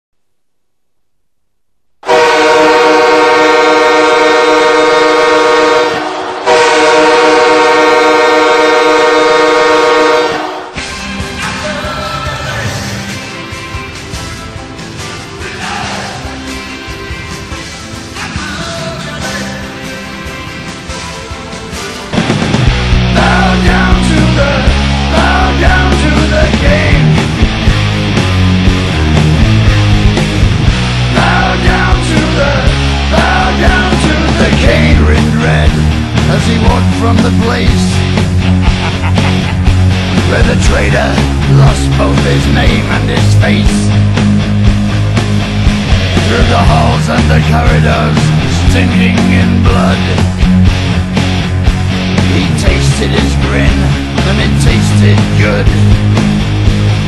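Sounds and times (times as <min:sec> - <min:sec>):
hockey goal horn blasts: 0:02.0 - 0:10.8
distorted electric guitar chords: 0:02.0 - 0:57.0
drums hitting steady beat: 0:20.1 - 0:57.0.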